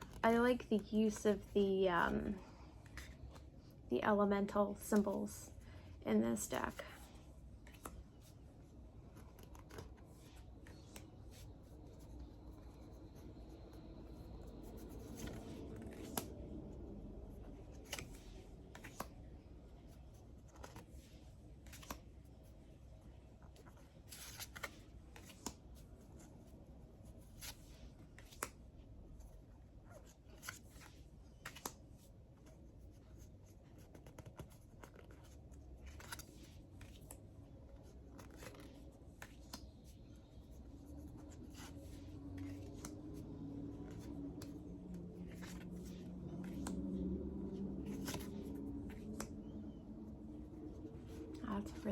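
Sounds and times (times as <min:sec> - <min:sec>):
low background hum: 0:00.0 - 0:51.9
cards clicking and sliding: 0:09.0 - 0:12.8, 0:14.2 - 0:16.5, 0:17.5 - 0:19.3, 0:21.6 - 0:22.2, 0:23.4 - 0:25.8, 0:30.0 - 0:32.5, 0:37.8 - 0:40.0, 0:41.1 - 0:47.0, 0:47.8 - 0:49.8.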